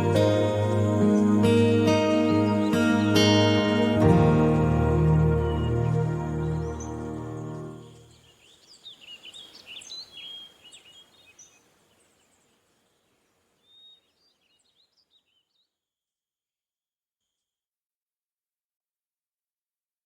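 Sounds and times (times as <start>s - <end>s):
gentle guitar music: 0.0s - 8.1s
birds chirping: 0.0s - 15.7s.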